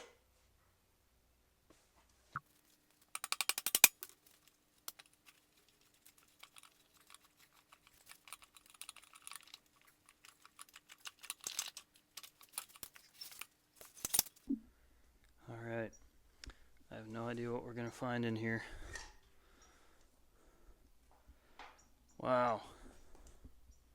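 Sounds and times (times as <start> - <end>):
hand tools clicking and tapping: 3.0 - 5.4
faint steady hum: 11.7 - 23.9.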